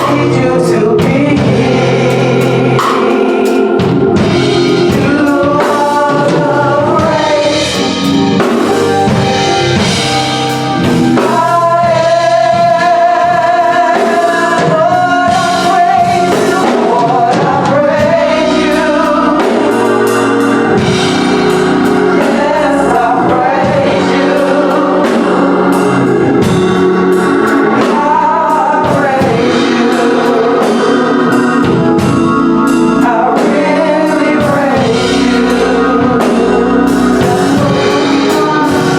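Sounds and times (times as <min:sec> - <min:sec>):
drums and backing instruments: 0:00.0 - 0:38.9
gospel singing: 0:00.0 - 0:38.9.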